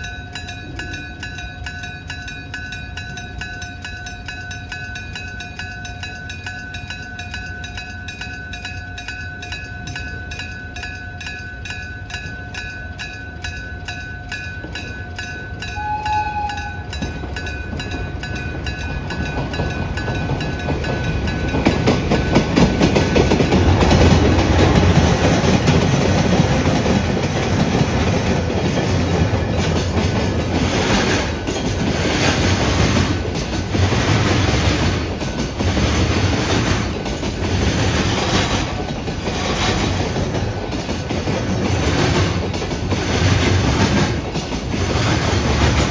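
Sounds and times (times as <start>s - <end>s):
freight train rumbling past: 0.0s - 45.9s
train horn: 15.7s - 17.0s.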